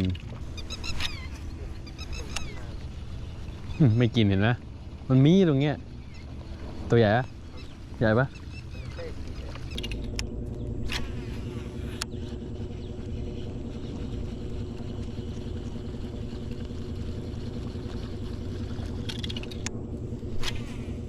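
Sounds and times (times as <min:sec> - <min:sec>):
boat motor running: 0:00.0 - 0:21.0.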